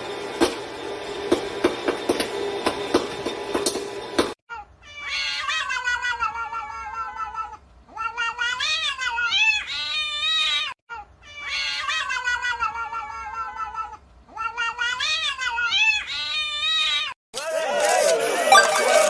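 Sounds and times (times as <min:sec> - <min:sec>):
cat yowling: 0:04.5 - 0:17.2.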